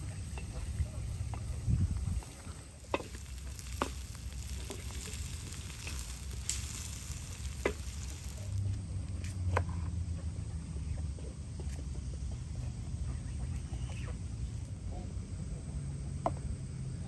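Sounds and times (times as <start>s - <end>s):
food sizzling in a pan: 0.0s - 8.7s.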